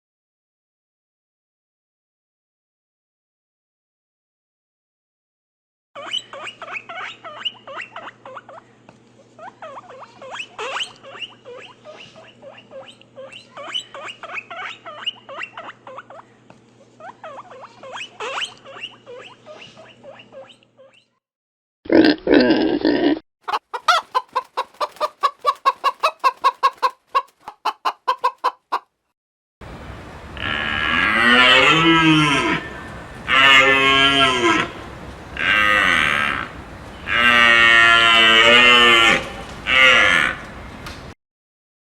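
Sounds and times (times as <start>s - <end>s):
hens clucking: 23.5s - 28.9s, 30.1s - 40.8s
cattle mooing: 30.4s - 40.5s.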